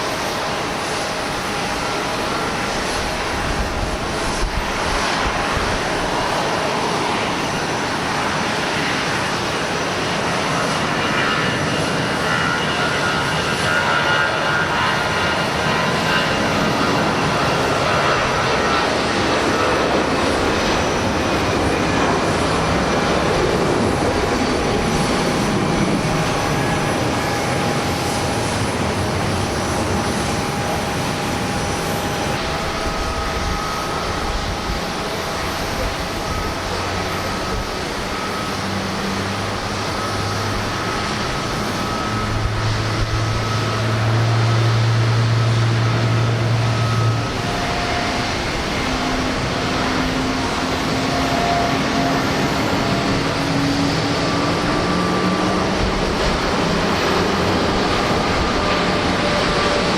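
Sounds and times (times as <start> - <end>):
jet engines roaring: 0.0 - 59.9.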